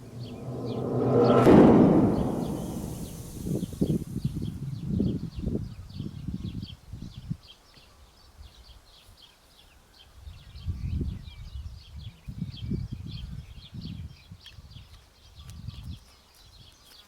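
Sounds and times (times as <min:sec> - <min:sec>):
low rumble: 0:00.0 - 0:04.3.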